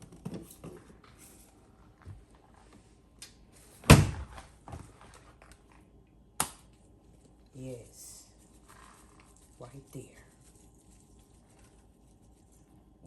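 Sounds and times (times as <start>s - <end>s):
loud thunk: 3.9s - 4.4s.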